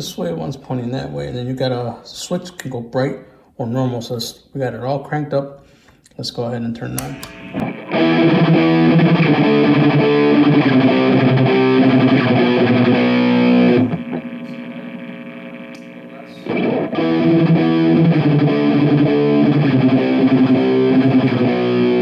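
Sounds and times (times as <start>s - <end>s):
distorted electric guitar riffing: 6.9s - 22.0s
guitar chord ringing: 6.9s - 22.0s.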